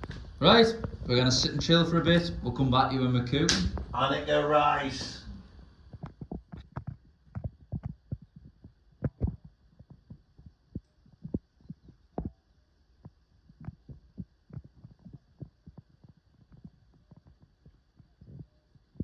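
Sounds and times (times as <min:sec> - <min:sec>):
wood fire crackling: 0:00.0 - 0:12.2.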